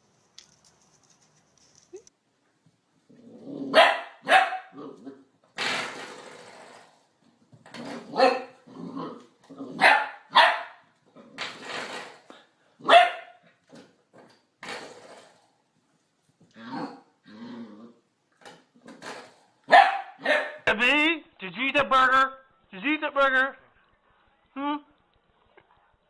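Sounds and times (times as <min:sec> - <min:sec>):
dog barking: 0:03.7 - 0:04.8, 0:08.1 - 0:08.6, 0:09.8 - 0:10.8, 0:12.8 - 0:13.4, 0:19.7 - 0:20.7.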